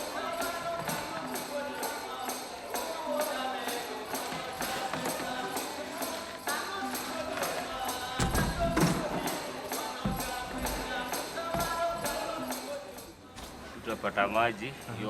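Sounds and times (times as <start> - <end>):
background music with percussion: 0.0 - 13.7
deep thumps: 8.2 - 9.3.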